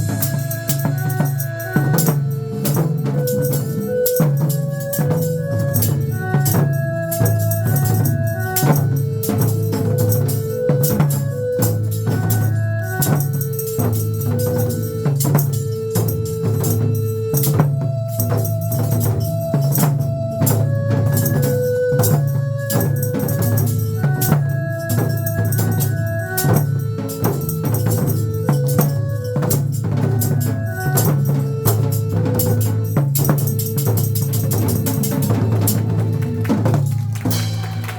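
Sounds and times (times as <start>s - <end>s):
drum beat: 0.0s - 37.9s
tambourine: 30.7s - 35.8s, 36.9s - 37.9s.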